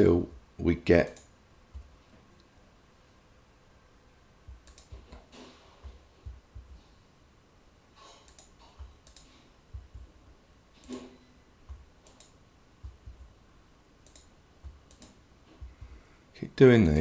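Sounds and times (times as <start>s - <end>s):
soft low thuds: 4.4s - 5.1s, 5.8s - 6.9s, 9.7s - 10.4s, 12.8s - 13.4s
mouse and keyboard clicks: 4.5s - 6.8s, 8.0s - 10.1s, 10.8s - 13.3s, 14.0s - 15.8s.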